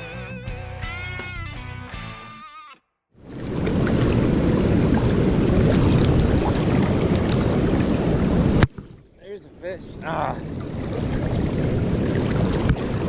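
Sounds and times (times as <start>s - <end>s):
flowing river water: 3.2s - 9.2s, 10.0s - 13.0s
wind buffeting microphone: 3.3s - 8.6s, 9.9s - 13.0s.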